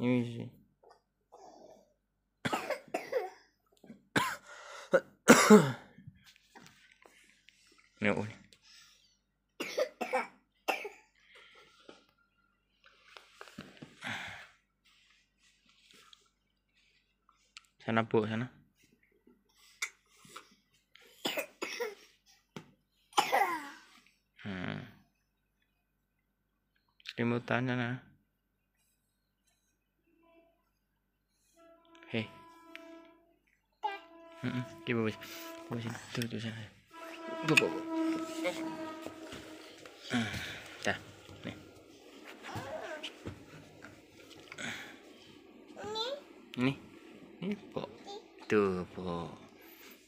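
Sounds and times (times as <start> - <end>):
child coughing: 2.4 - 3.5, 4.2 - 4.4, 5.0 - 5.9, 9.6 - 11.1, 21.2 - 22.1, 23.2 - 23.9.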